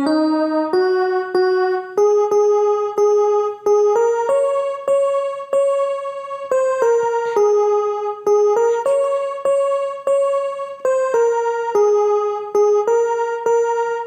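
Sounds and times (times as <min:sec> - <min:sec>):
electronic keyboard melody: 0:00.0 - 0:14.0.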